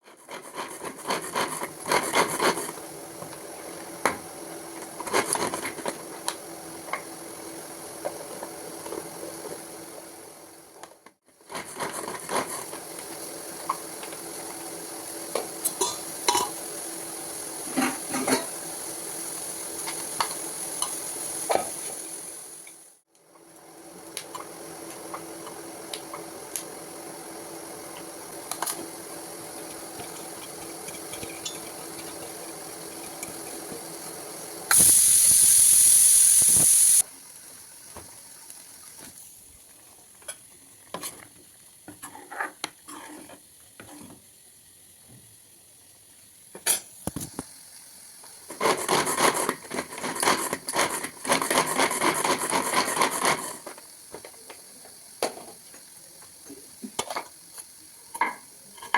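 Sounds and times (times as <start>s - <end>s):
sizzling in a pan: 0.0s - 58.9s
steady kitchen hum: 0.0s - 58.9s
loud hiss: 31.8s - 37.6s.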